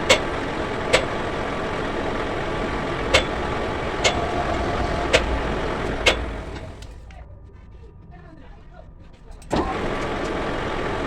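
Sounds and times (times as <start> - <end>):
metal lathe running: 0.0 - 7.1.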